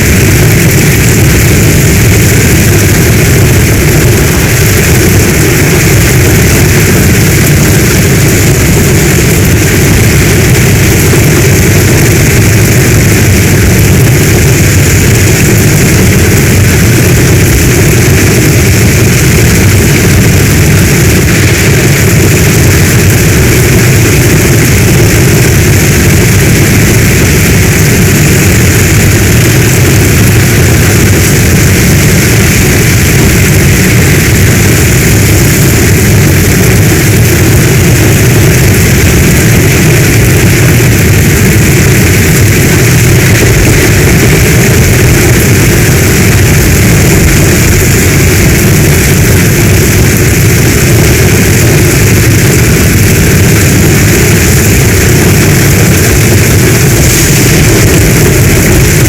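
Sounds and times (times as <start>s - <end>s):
deep rumble: 0.0s - 59.0s
heavy rain hissing: 0.0s - 59.0s.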